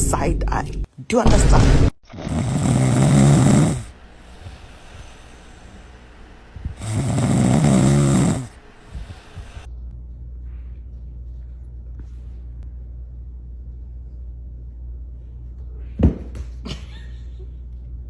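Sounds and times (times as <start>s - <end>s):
loud snoring: 2.1s - 5.8s, 6.7s - 9.7s
steady low hum: 2.1s - 18.0s.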